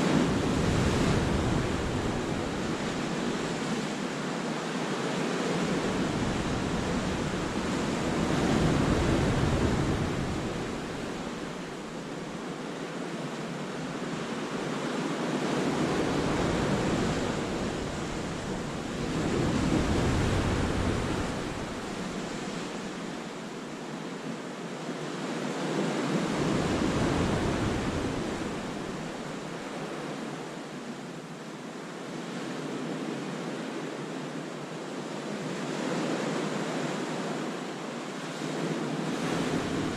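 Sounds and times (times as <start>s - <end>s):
waves crashing on rocks: 15.4s - 23.0s.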